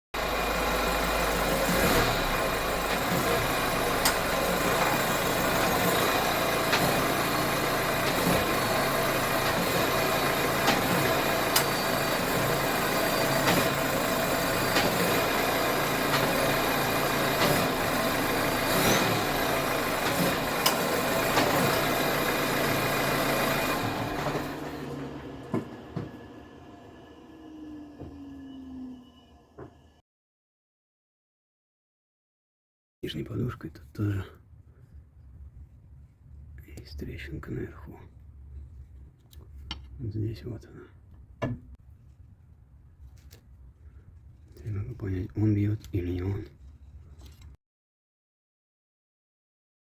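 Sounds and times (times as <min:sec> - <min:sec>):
diesel engine idling: 0:00.2 - 0:28.3.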